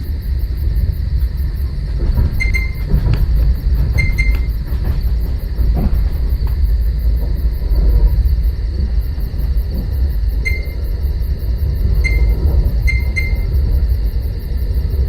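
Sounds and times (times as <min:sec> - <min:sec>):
train low rumble: 0:00.0 - 0:15.0
knocks over the rails: 0:01.8 - 0:07.5.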